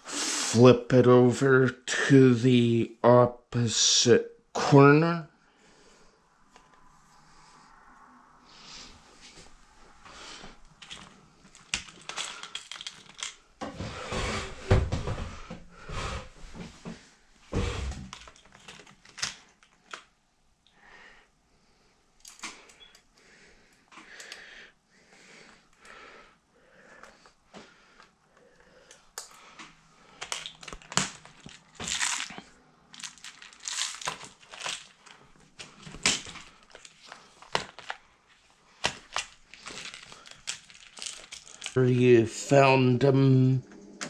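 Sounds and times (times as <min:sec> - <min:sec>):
small clicks and scrapes: 0:10.8 - 0:13.4.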